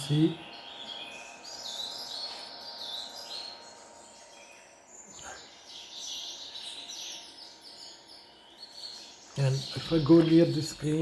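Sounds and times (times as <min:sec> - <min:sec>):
birds chirping and calling: 0:00.0 - 0:11.0.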